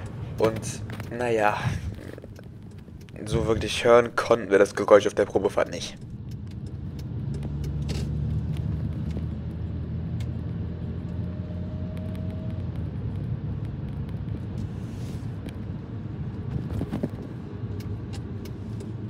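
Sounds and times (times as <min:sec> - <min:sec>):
light clicks: 0:00.0 - 0:09.3
car engine and road rumble: 0:00.0 - 0:19.0.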